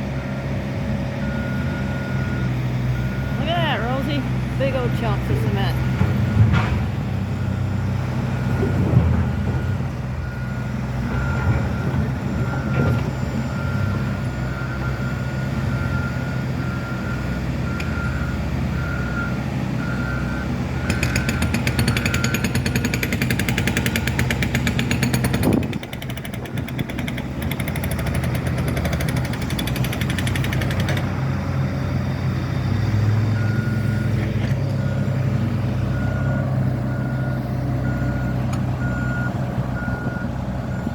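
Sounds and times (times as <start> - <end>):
diesel machinery running: 0.0 - 40.9
reversing alarm beeping: 1.1 - 6.5, 7.3 - 25.7, 32.7 - 40.9
jackhammer breaking concrete: 20.8 - 31.2.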